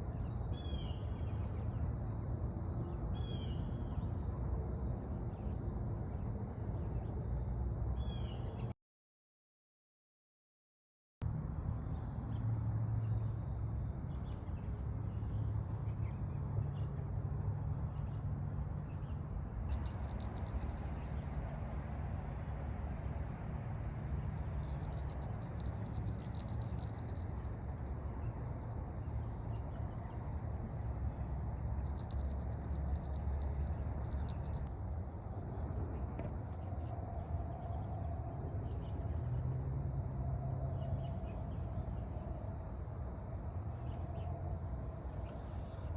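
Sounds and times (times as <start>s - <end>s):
crickets chirring: 0.0s - 8.6s, 11.3s - 45.9s
insect pulsing trill: 19.7s - 21.6s, 24.3s - 27.5s, 31.8s - 34.7s
low background rumble: 22.2s - 27.8s, 30.9s - 34.7s.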